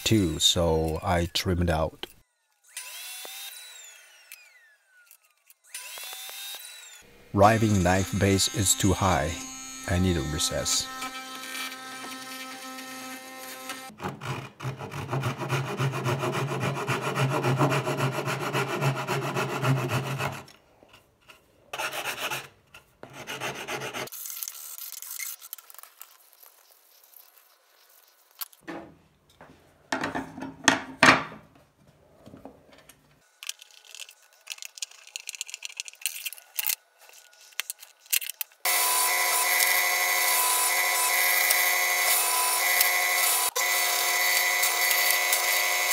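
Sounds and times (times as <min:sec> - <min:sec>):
power tool motor: 0:02.4 - 0:13.9, 0:38.6 - 0:45.9
hand sawing and rasping wood: 0:05.8 - 0:20.6, 0:21.7 - 0:24.2, 0:38.6 - 0:45.9.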